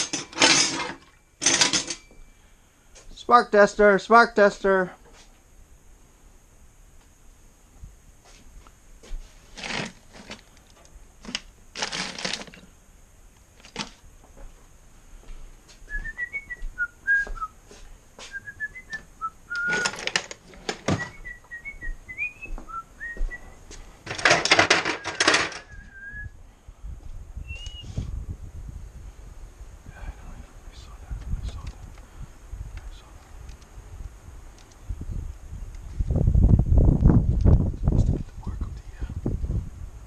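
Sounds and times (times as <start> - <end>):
rattling and rummaging: 0.0 - 2.1, 9.4 - 12.7, 13.6 - 14.0, 19.6 - 21.1, 24.0 - 25.7
person whistling: 15.9 - 17.5, 18.3 - 19.9, 21.0 - 23.5, 25.0 - 26.4, 27.4 - 28.0.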